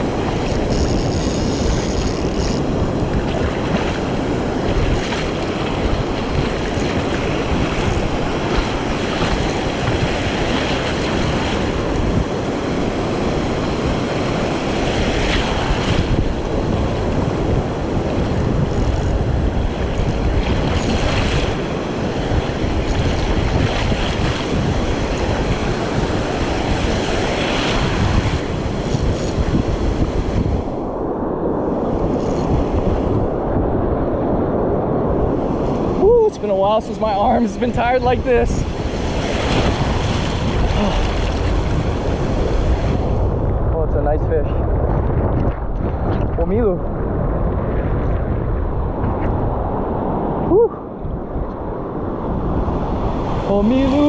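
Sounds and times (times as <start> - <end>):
surf breaking on rocks: 0.0 - 30.7, 35.4 - 43.4, 53.1 - 54.0
wind buffeting microphone: 0.0 - 54.0.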